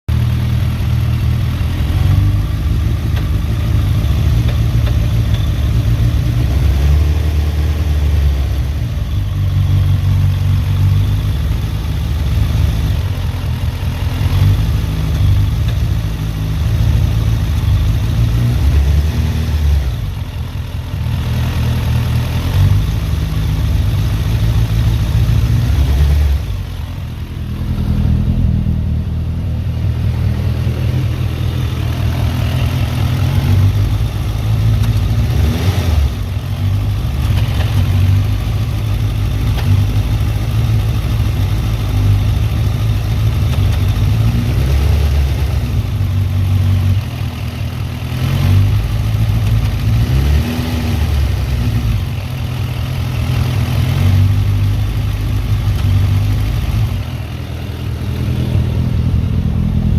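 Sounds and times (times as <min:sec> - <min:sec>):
low engine-like rumble: 0:22.9 - 0:35.4, 0:54.6 - 0:59.9.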